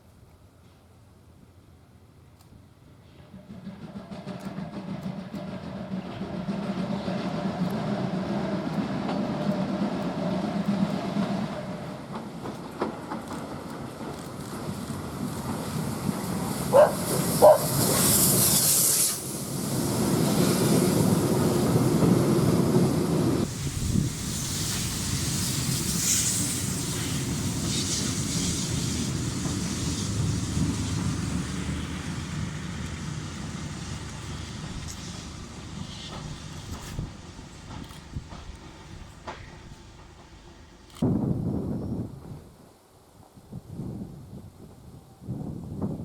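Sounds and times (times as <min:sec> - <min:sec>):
train rumbling past: 0:02.7 - 0:46.0
steam hiss: 0:03.0 - 0:44.8.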